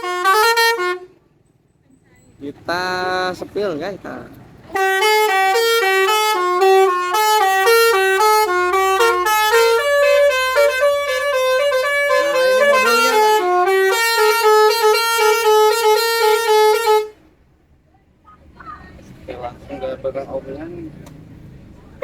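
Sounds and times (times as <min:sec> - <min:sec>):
multi-tone air horn melody: 0:00.0 - 0:01.2, 0:04.7 - 0:17.3.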